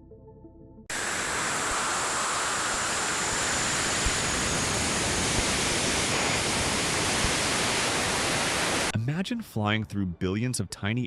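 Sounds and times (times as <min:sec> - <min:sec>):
faint high whine: 0:00.9 - 0:08.9
static-like hiss: 0:00.9 - 0:08.9.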